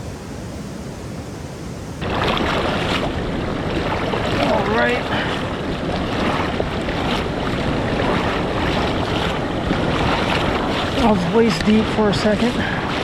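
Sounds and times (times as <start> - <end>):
river water rushing through dam: 3.7 - 13.0.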